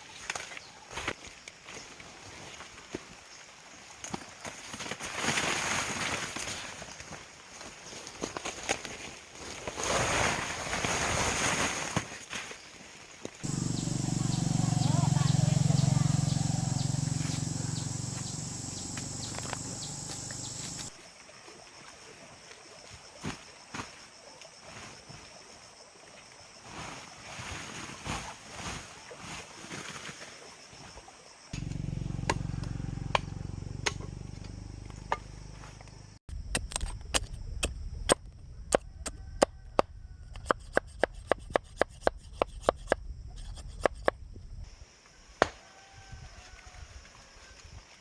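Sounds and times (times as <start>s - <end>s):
low hum: 13.5s - 20.9s, 31.6s - 36.2s.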